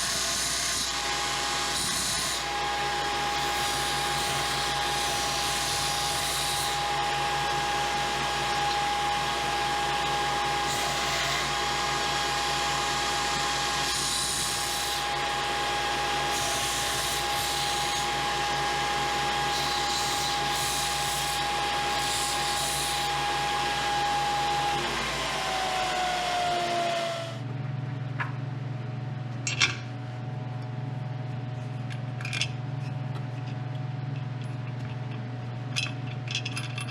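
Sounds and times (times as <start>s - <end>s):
power tool motor whining: 0.0s - 27.4s.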